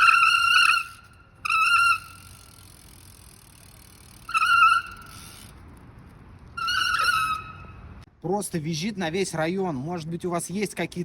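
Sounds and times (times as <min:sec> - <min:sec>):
bicycle brakes squealing: 0:00.0 - 0:05.6, 0:06.5 - 0:07.9.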